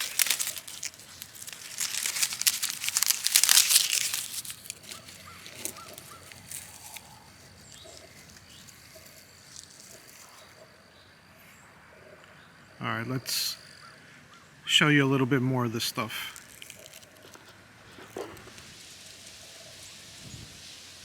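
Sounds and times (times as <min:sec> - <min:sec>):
dry corn stalks crackling: 0:00.0 - 0:10.6, 0:15.8 - 0:21.0.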